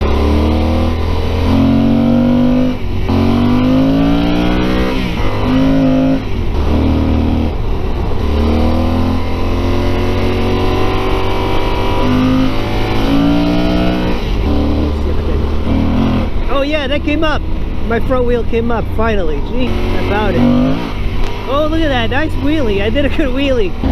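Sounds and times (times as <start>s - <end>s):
motorcycle engine shifting through gears: 0.0s - 23.9s.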